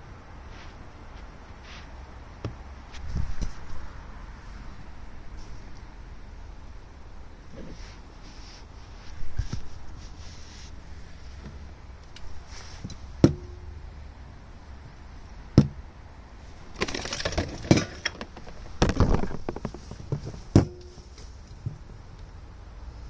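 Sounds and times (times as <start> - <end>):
rattling clatter: 16.8 - 20.3.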